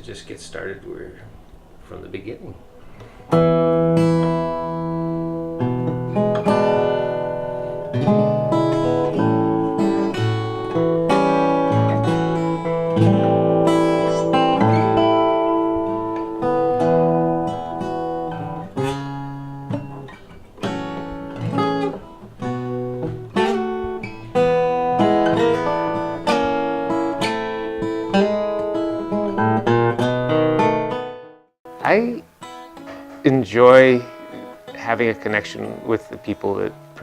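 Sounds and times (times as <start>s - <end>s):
acoustic guitar playing blues: 2.5s - 37.0s.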